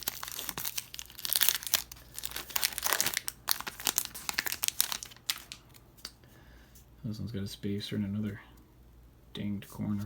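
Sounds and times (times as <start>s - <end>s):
card pack wrapper crinkling: 0.0s - 6.1s.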